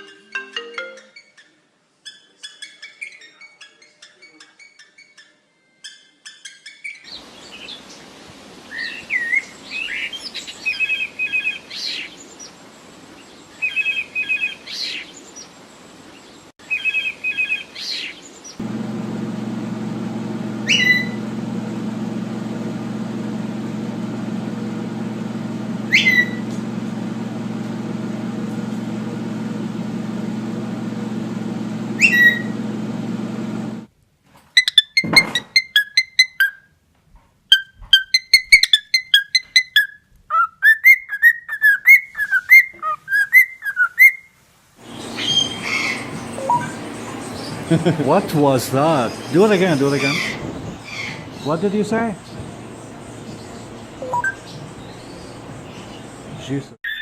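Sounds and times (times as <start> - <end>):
cockatiel chirping and whistling: 20.6 - 21.2, 25.9 - 26.4, 32.0 - 32.6, 34.6 - 36.6, 37.5 - 44.3, 45.2 - 46.8, 54.0 - 55.3
steady low hum: 44.8 - 56.8.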